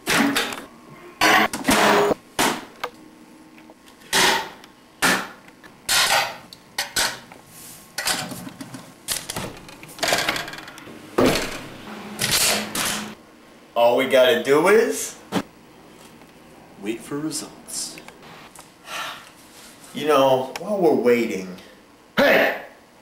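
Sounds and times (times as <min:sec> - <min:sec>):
objects knocking and clattering: 0:08.0 - 0:13.2.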